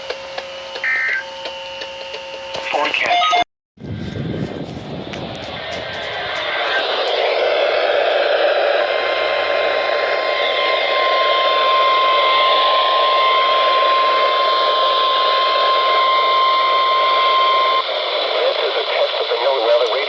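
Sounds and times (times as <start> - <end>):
radio static hiss: 0.8 - 1.3, 2.5 - 3.4, 5.6 - 7.0, 17.8 - 20.0.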